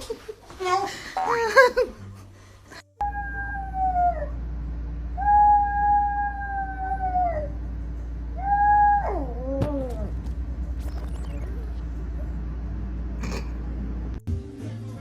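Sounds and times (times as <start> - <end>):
low hum: 1.9 - 14.4
dog howling: 5.2 - 7.6, 8.4 - 10.2.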